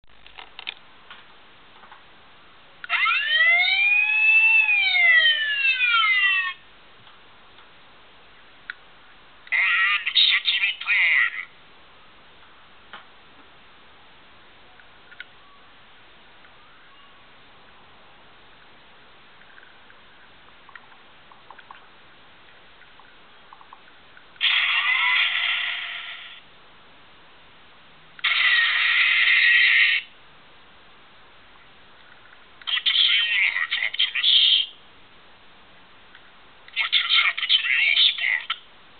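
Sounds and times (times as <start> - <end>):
harsh electronic toy sound effects: 2.9 - 6.6, 9.5 - 11.5, 24.4 - 26.4, 28.2 - 30.1, 32.7 - 34.8, 36.8 - 38.6.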